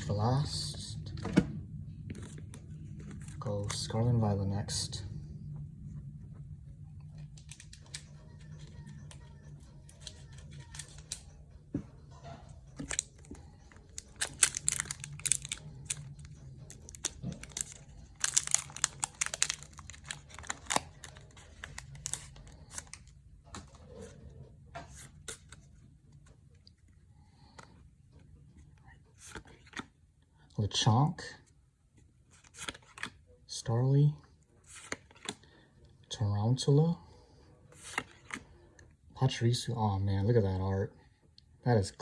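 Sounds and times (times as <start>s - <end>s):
faint low hum: 0.0s - 42.0s
foil wrapper crinkling and tearing: 12.8s - 23.1s.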